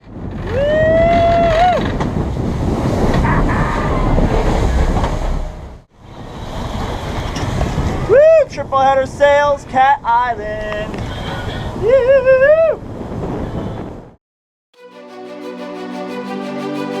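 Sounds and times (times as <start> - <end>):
wind buffeting microphone: 0.0 - 8.2
boat rushing through water: 1.3 - 8.1.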